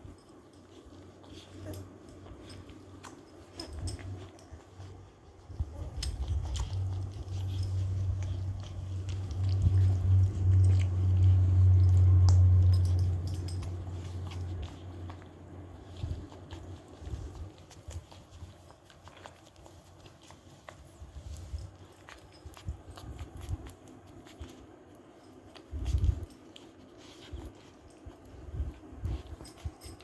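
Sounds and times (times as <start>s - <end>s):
low steady hum: 0.0s - 30.0s
puppies suckling smacking clicks: 0.2s - 30.0s.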